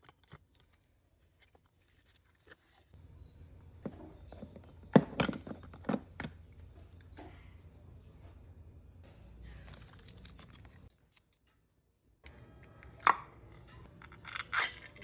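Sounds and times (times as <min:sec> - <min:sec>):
packaging crinkling and tearing: 0:14.2 - 0:15.0.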